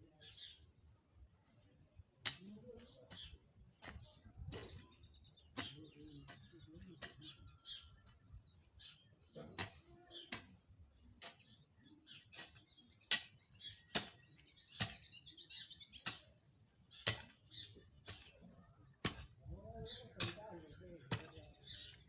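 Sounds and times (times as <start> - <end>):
birds chirping: 0.0 - 22.0
hoe chopping into soil: 12.4 - 15.1.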